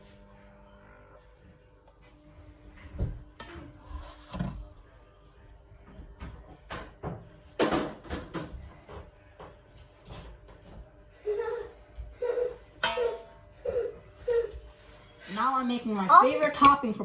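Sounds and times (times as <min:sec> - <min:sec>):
kitchen knocks and bumps: 0:06.1 - 0:09.6.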